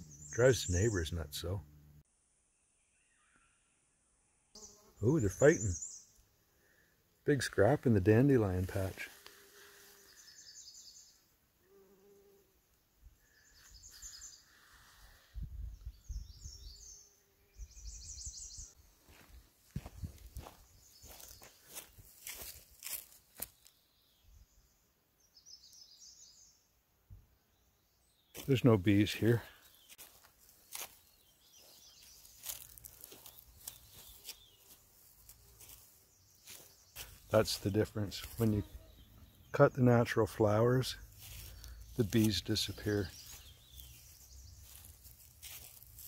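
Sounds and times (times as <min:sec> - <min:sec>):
rustling: 0:31.6 - 0:37.2, 0:43.1 - 0:46.0.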